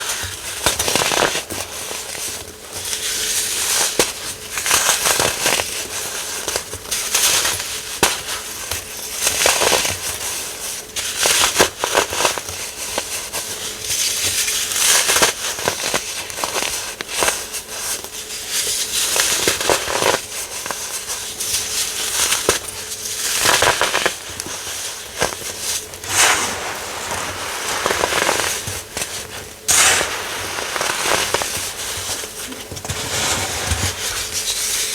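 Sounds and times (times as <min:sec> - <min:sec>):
baking soda crunching: 0:14.8 - 0:34.9.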